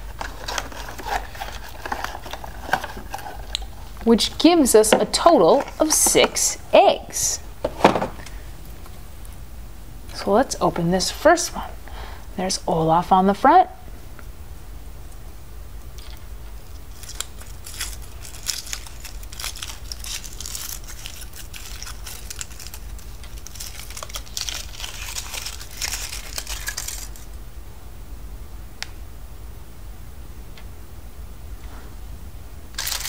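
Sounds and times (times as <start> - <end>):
foil wrapper crinkling and tearing: 0.0 - 4.4, 16.8 - 27.3, 32.7 - 33.0.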